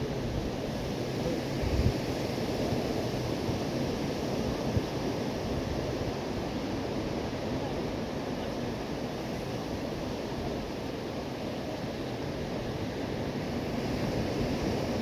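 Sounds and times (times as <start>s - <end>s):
wind on microphone: 0.0s - 7.3s.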